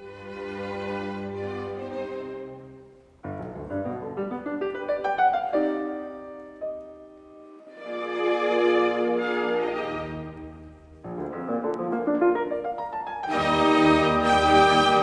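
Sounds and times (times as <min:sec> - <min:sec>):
solo piano: 0:02.4 - 0:07.8, 0:10.4 - 0:15.0
string chord: 0:13.2 - 0:15.0.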